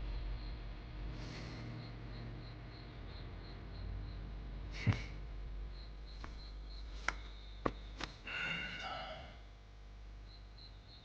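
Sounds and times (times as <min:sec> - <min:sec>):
faint high chirping: 0:00.0 - 0:09.5, 0:10.2 - 0:11.0.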